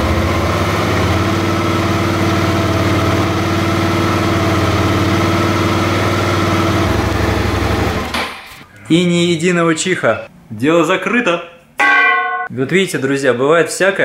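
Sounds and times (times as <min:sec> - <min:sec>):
motorcycle engine running: 0:00.0 - 0:08.4.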